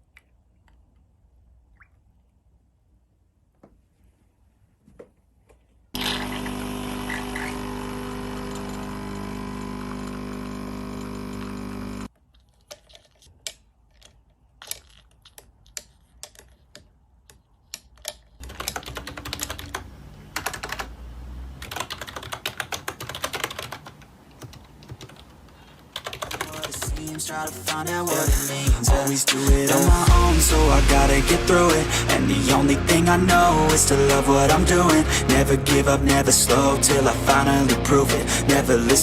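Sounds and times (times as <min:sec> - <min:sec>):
mechanical keyboard typing: 0:18.0 - 0:19.8, 0:20.4 - 0:20.9, 0:21.6 - 0:27.2.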